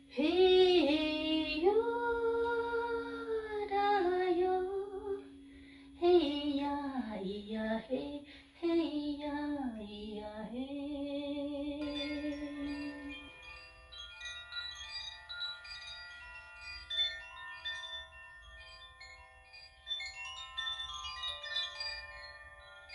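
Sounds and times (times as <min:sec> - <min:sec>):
woman singing wordless held notes: 0:00.0 - 0:13.3
singing bowl drone: 0:00.0 - 0:22.9.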